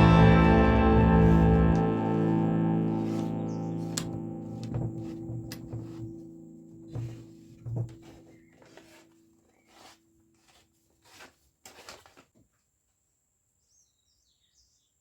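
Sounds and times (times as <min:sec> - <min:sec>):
low note: 0:00.0 - 0:07.2
faint knocks: 0:04.6 - 0:06.2, 0:06.8 - 0:08.4.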